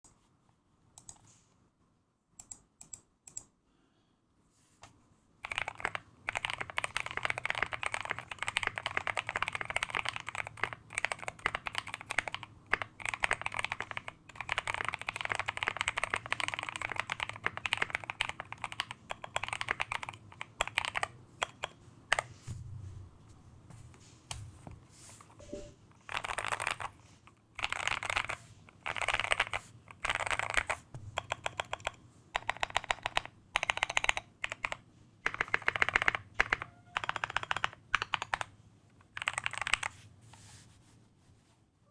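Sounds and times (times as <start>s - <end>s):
mechanical keyboard typing: 1.0s - 1.3s, 5.4s - 22.3s, 25.5s - 27.0s, 27.6s - 40.0s.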